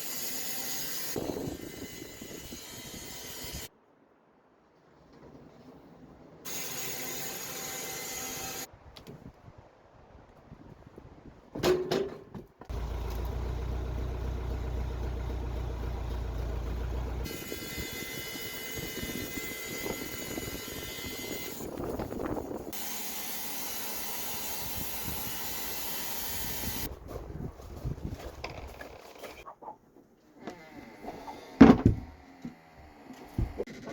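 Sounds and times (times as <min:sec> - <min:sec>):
engine-driven saw cutting log: 0:06.5 - 0:08.7, 0:12.7 - 0:22.0, 0:22.7 - 0:26.9, 0:30.4 - 0:33.9.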